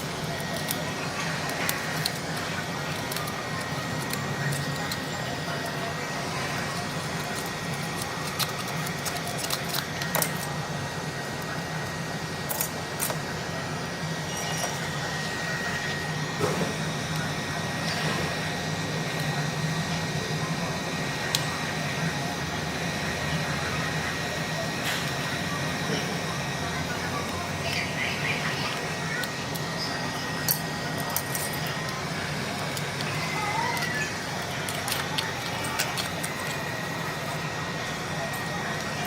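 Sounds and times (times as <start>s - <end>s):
small tools clicking and tapping: 0.4s - 5.8s, 6.7s - 10.5s, 34.6s - 36.6s.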